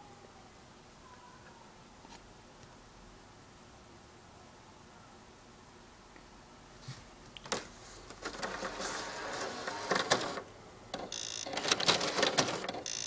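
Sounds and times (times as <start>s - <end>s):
disc drive whirring and clicking: 8.1s - 13.0s
short buzzing tone: 11.1s - 11.5s.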